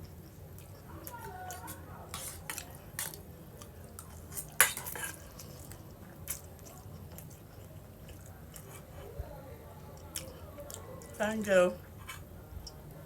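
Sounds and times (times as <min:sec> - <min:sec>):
cutlery tapping on a plate: 0:01.5 - 0:03.2, 0:04.3 - 0:05.3.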